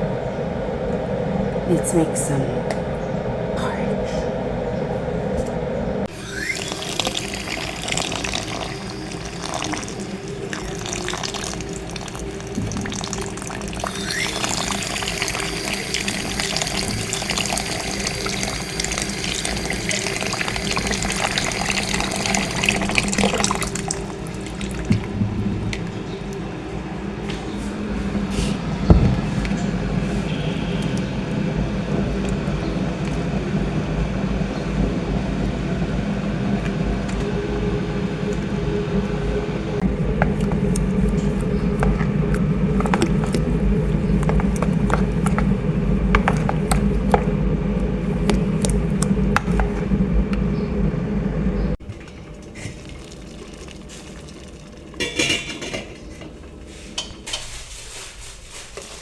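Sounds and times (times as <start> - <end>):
low machine hum: 0.0 - 57.1
dishes and utensils clinking: 55.0 - 57.6.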